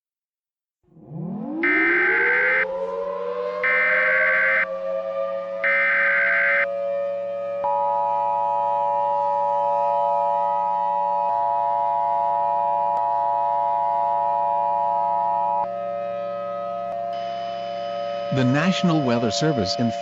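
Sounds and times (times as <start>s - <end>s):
digital header data burst: 18.3s - 20.0s.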